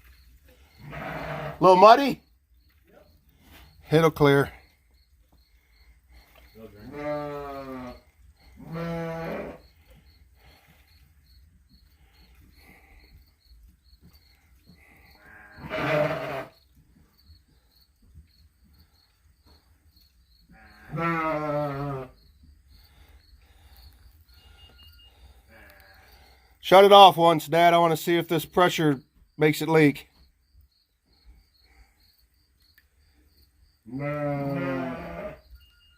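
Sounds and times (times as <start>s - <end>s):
farm animal bleating: 0.6s - 2.2s, 6.5s - 10.8s, 14.7s - 16.6s, 20.5s - 22.2s, 24.4s - 26.4s, 33.8s - 35.7s.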